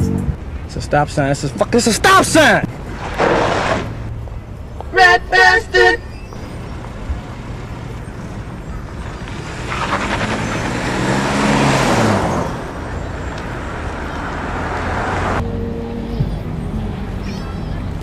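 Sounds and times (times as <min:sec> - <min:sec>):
road noise in traffic: 0:00.0 - 0:18.0
car engine: 0:01.6 - 0:18.0
vehicle passing close by: 0:06.4 - 0:18.0.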